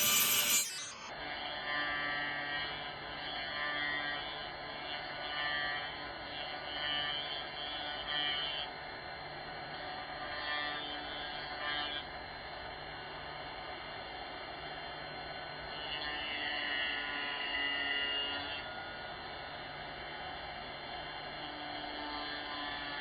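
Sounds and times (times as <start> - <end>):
small electric motor whirring: 0.0 - 1.1, 15.6 - 23.0.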